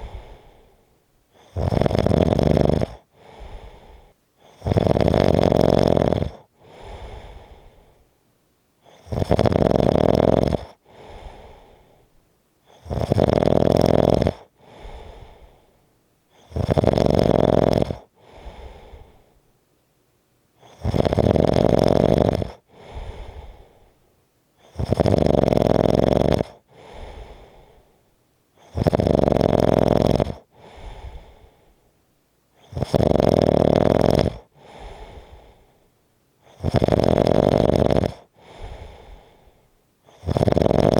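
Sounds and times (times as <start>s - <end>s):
person snoring heavily: 0.0s - 0.8s, 1.4s - 7.9s, 8.8s - 12.0s, 12.7s - 15.6s, 16.3s - 19.3s, 20.6s - 23.9s, 24.6s - 27.9s, 28.6s - 31.6s, 32.6s - 35.7s, 36.4s - 39.5s, 40.1s - 40.9s
short breath sound: 0.0s - 1.0s, 3.1s - 4.2s, 6.6s - 8.1s, 10.8s - 12.1s, 14.6s - 15.9s, 18.2s - 19.4s, 22.7s - 24.0s, 26.7s - 28.1s, 30.5s - 31.9s, 34.6s - 35.9s, 38.4s - 40.2s.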